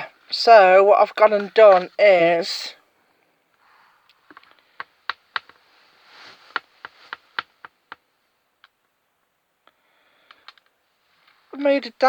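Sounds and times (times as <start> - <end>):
soft rustle: 3.0 - 8.8, 10.2 - 11.8.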